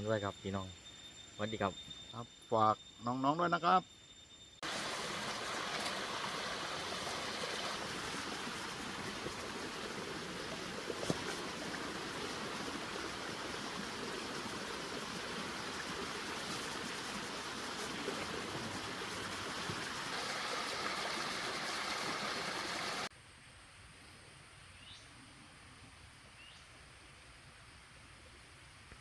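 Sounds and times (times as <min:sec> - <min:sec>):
faint high chirp: 0:00.0 - 0:04.6
flowing water rushing: 0:04.6 - 0:23.1.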